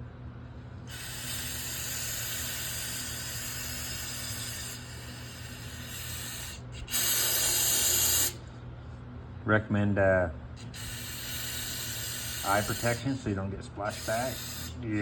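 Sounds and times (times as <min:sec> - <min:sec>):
aerosol spraying: 0:00.9 - 0:08.4, 0:10.6 - 0:13.1, 0:13.9 - 0:14.8.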